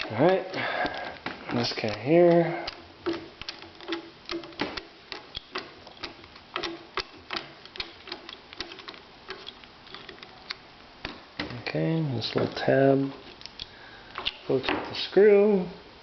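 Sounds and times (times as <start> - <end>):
screwdriver clicking: 1.8 - 10.6.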